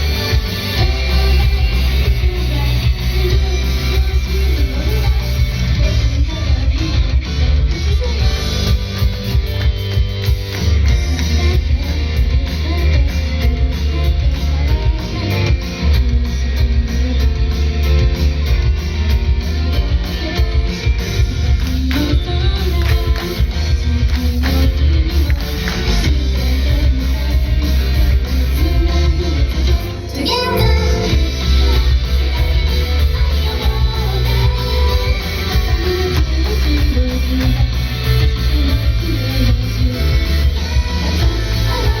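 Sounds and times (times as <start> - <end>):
bass guitar: 0.0 - 42.0
strummed electric guitar: 0.0 - 42.0
drum kit beat: 30.1 - 34.0.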